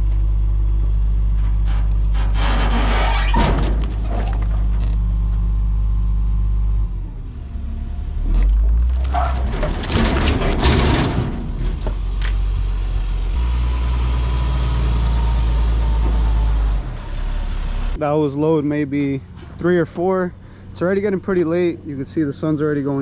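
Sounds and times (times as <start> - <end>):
skid steer engine running: 0.0 - 18.0
heavy logs knocking and crunching: 3.3 - 5.5, 8.3 - 12.7.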